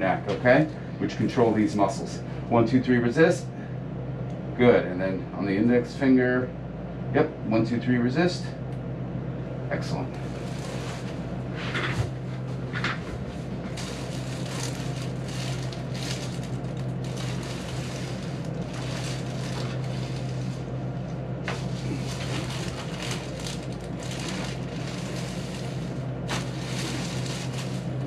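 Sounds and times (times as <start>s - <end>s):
steady low hum: 0.0s - 28.0s
rustling and handling noises: 10.2s - 28.0s.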